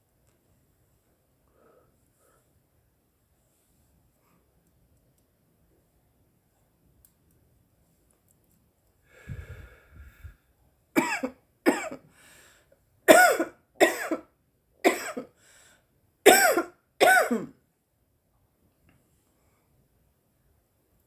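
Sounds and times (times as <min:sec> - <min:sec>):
woman coughing: 0:11.0 - 0:12.0, 0:13.1 - 0:14.3, 0:14.9 - 0:15.3, 0:16.3 - 0:17.5.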